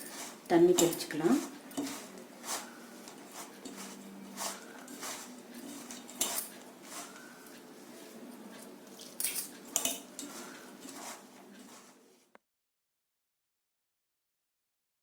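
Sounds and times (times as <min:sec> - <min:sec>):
spoon clinking metal bowl: 0:00.0 - 0:02.0, 0:03.0 - 0:07.3, 0:08.9 - 0:11.1
batter mixing rustle: 0:00.0 - 0:12.3.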